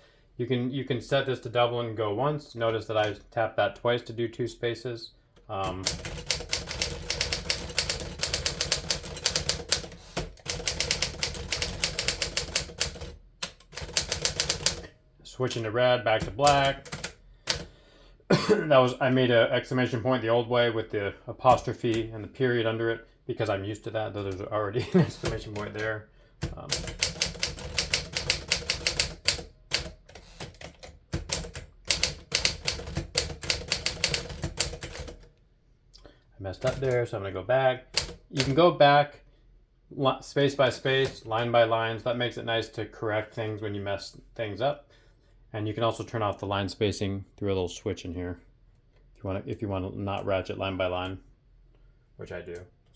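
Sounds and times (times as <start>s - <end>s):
manual typewriter keystrokes clacking: 5.6s - 14.9s, 15.5s - 17.7s, 25.2s - 35.3s, 36.6s - 37.0s, 37.9s - 38.6s.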